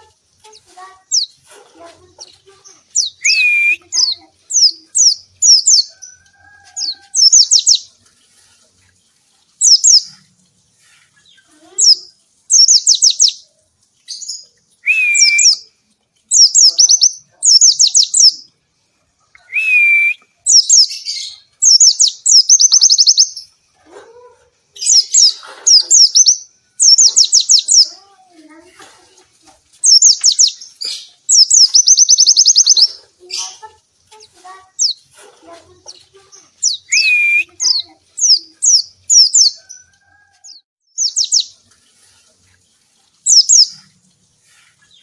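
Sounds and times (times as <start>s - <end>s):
bird singing high descending notes: 3.0s - 5.9s, 14.2s - 15.7s, 31.3s - 33.0s, 36.6s - 39.6s
lower slurred whistle: 14.8s - 15.6s, 19.5s - 20.2s, 36.9s - 37.5s.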